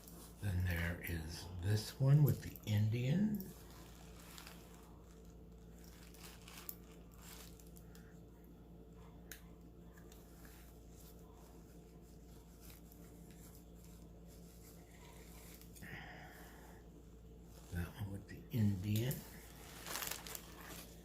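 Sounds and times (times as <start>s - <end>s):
faint steady hum: 0.0s - 21.0s
jewelry clicking and rustling: 3.3s - 8.0s.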